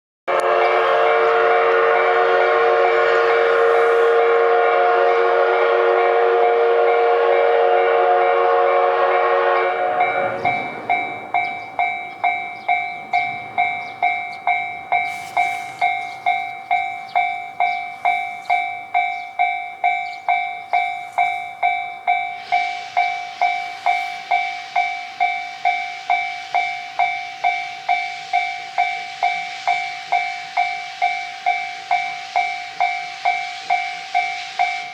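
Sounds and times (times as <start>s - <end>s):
steam whistle blast: 0.3s - 11.7s, 15.0s - 16.4s, 21.3s - 34.9s
level crossing alarm ringing: 0.3s - 34.9s.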